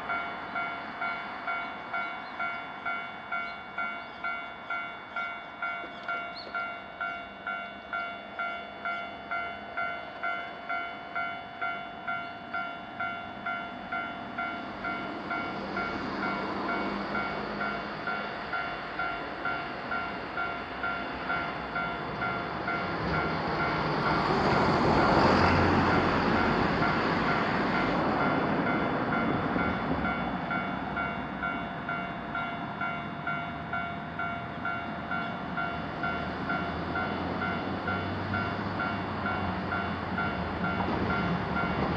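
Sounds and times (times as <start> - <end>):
railroad crossing bell ringing: 0.0 - 41.9
train passing: 0.0 - 41.9.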